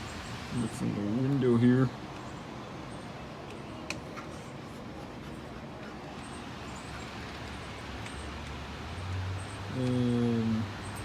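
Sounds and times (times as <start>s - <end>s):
rain: 6.5s - 11.0s.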